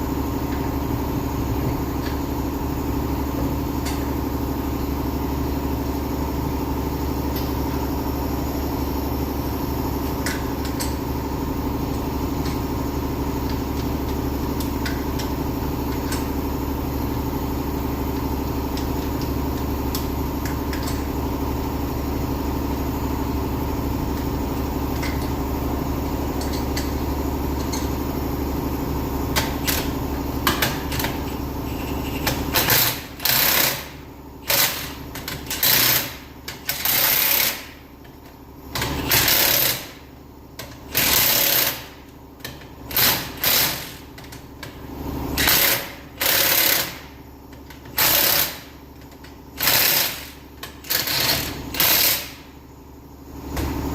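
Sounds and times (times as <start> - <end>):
steady machine hum: 0.0 - 53.9
power tool bursts: 49.6 - 52.4.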